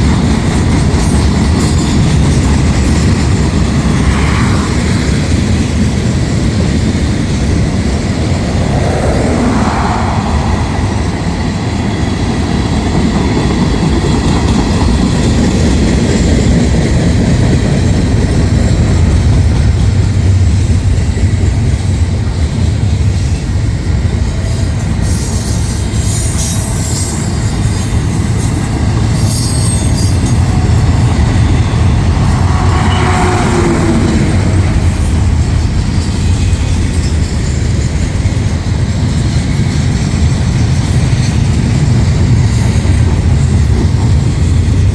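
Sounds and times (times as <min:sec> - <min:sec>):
train wheels rumbling on rail: 0:00.0 - 0:44.9
high-pitched wheel squeal: 0:25.1 - 0:36.4.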